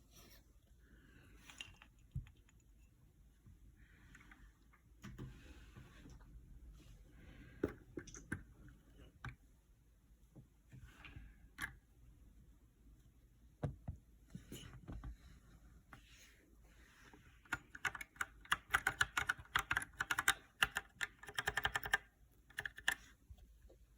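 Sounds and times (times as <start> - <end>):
typing on mechanical keyboard: 17.5 - 23.1.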